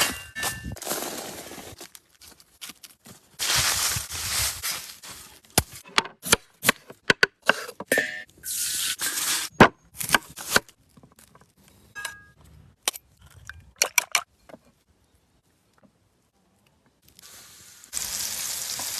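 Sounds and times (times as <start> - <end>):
plastic packaging rustling and tearing: 0.8 - 5.8.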